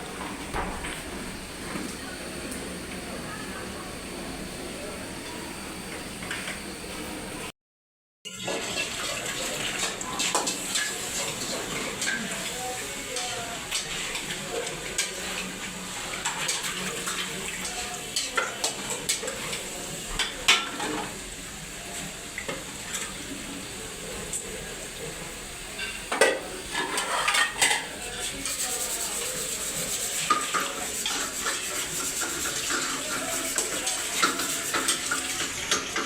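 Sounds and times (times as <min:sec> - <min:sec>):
metal spoon scraping cooking pot: 0:26.7 - 0:27.9.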